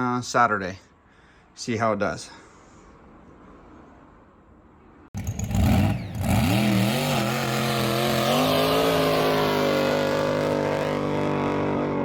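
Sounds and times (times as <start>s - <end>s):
jet boat engine revving: 5.2s - 12.0s.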